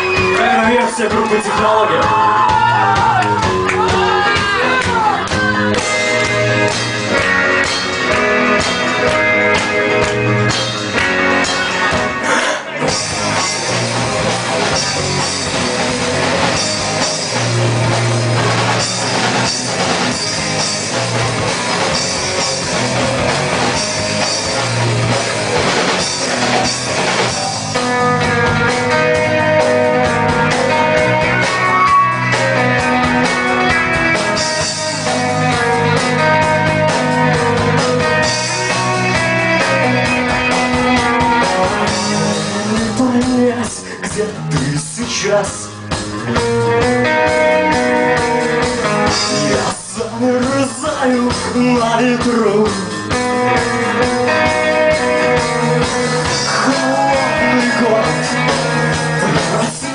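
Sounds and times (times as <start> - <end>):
rock band playing: 0.0 - 59.9
person singing: 42.0 - 45.8, 48.9 - 59.9.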